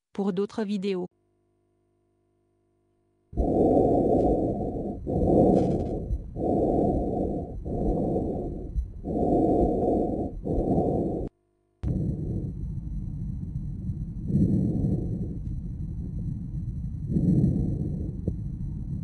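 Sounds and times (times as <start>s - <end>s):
breathing through a stethoscope: 3.4s - 11.3s, 14.3s - 15.5s.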